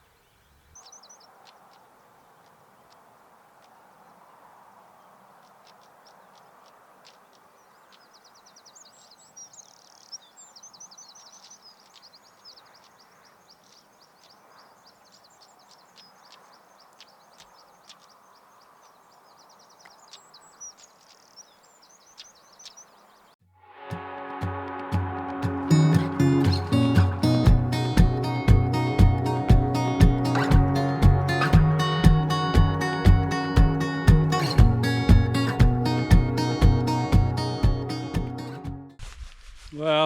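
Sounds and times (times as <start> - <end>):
songbird chirping: 0.0 - 23.4, 24.0 - 38.9.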